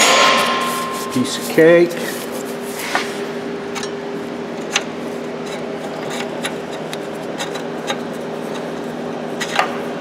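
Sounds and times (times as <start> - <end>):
steady background hum: 0.0 - 10.0.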